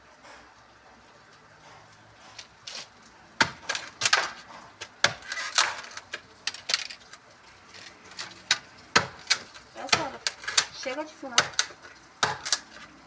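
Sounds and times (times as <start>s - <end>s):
firewood sticks knocking together: 2.4s - 13.0s.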